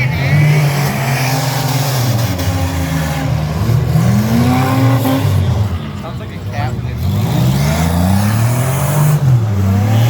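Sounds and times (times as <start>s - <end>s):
car engines revving: 0.0s - 10.0s.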